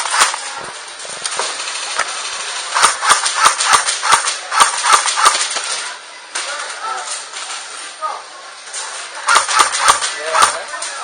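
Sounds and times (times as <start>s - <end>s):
airsoft gun shots: 0.0s - 0.4s, 2.8s - 5.6s, 9.2s - 10.6s.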